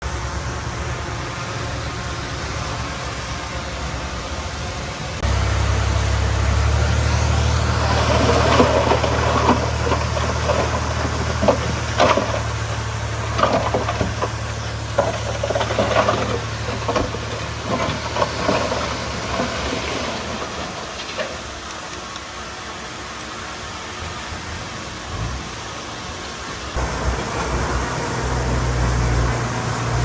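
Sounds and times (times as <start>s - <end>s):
diesel engine rumbling: 0.0s - 30.0s
knocks and clattering: 7.8s - 21.9s.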